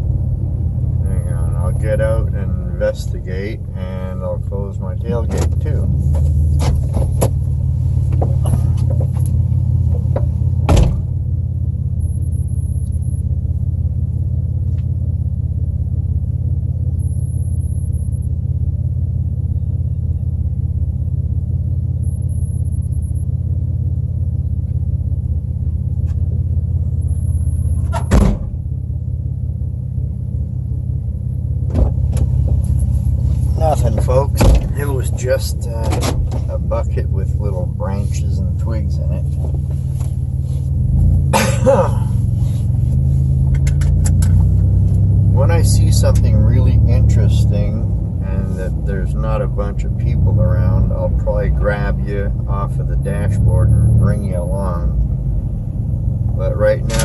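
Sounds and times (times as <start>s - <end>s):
vehicle engine idling: 0.0s - 57.0s
door thudding shut: 10.7s - 11.1s, 27.9s - 28.6s, 34.4s - 34.7s.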